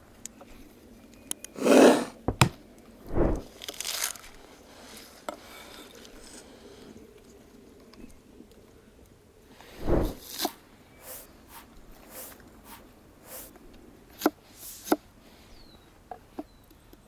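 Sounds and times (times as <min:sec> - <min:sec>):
low thud: 0:02.3 - 0:03.5
crunching rustling bursts: 0:03.1 - 0:05.0.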